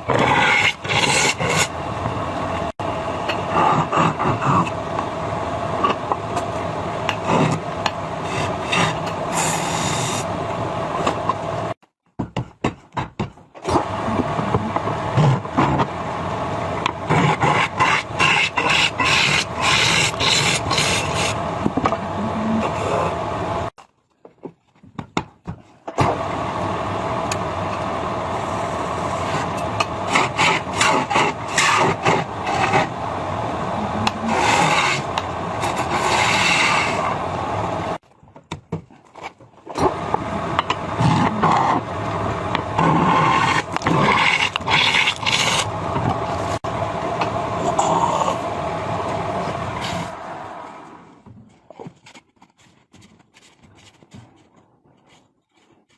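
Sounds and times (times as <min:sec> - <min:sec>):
turning tool scraping wood: 0:00.0 - 0:01.8, 0:16.8 - 0:23.2, 0:29.0 - 0:33.0, 0:33.8 - 0:37.2, 0:41.0 - 0:46.6
wood lathe motor hum: 0:26.2 - 0:38.0.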